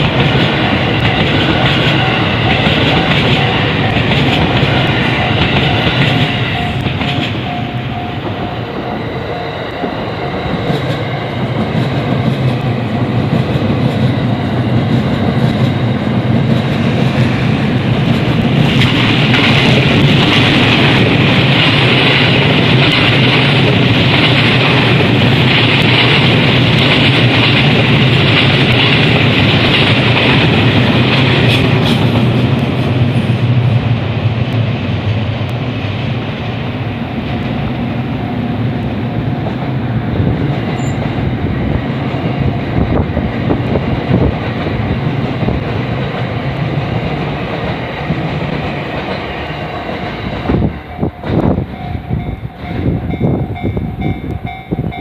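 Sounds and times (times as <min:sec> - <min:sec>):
crossing warning bell: 0:00.0 - 0:16.5, 0:36.9 - 0:43.0, 0:49.0 - 0:55.0
train wheels on rails: 0:00.0 - 0:55.0.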